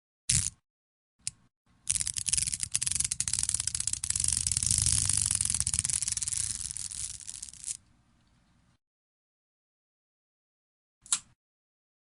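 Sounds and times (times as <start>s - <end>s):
beads rattling: 1.9s - 7.8s.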